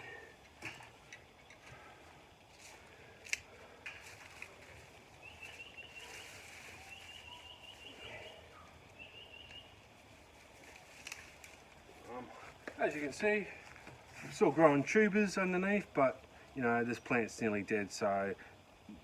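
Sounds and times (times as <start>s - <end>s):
bird trilling: 9.0s - 9.7s.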